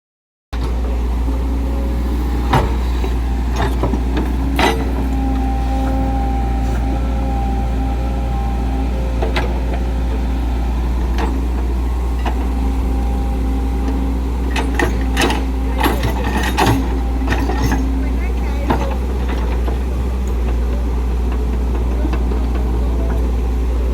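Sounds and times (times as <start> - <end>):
excavator engine running: 0.6 - 23.9
clattering: 2.4 - 6.8.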